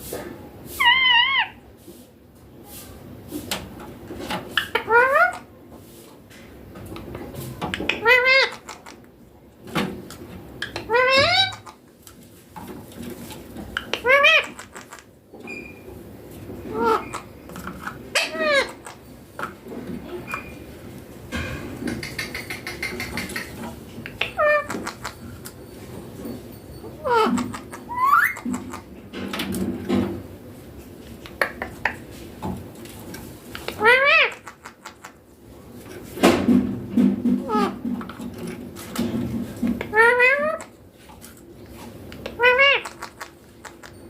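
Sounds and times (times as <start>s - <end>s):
parakeet squawk: 0.8s - 1.6s, 7.9s - 8.8s, 10.6s - 11.7s, 13.9s - 14.9s, 16.7s - 17.3s, 18.1s - 18.9s, 24.2s - 25.1s, 27.0s - 28.9s, 33.8s - 34.9s, 39.9s - 40.7s, 42.3s - 43.3s.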